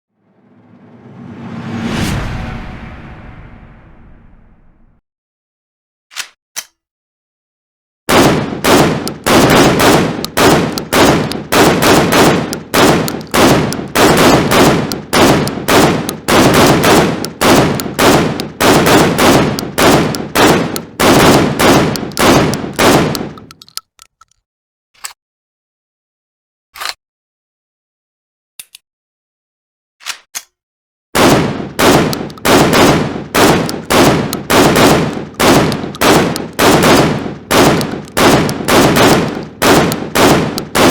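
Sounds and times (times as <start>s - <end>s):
automatic shotgun firing: 8.1s - 23.6s, 31.2s - 40.9s.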